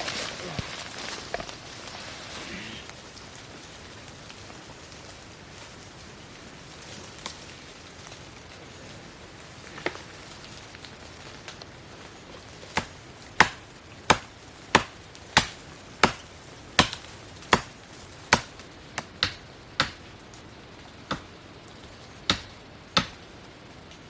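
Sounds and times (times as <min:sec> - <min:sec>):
sharp chopping blows: 0:12.8 - 0:17.7, 0:22.3 - 0:23.2.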